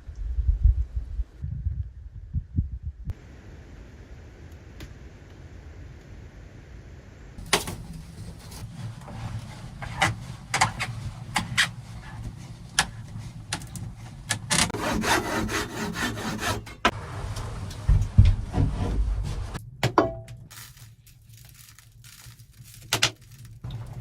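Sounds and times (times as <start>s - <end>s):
wood scraping and crackling: 7.4s - 17.0s, 20.5s - 24.0s.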